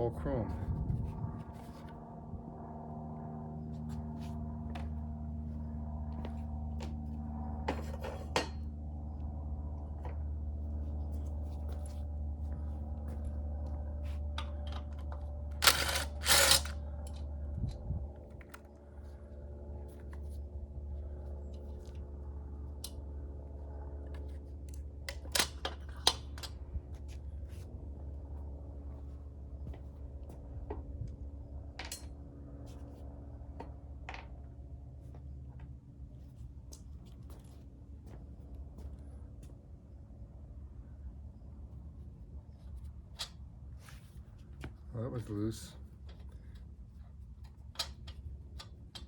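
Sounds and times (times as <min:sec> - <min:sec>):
steady low hum: 0:00.0 - 0:49.0
tools and metal parts clinking: 0:14.4 - 0:17.2.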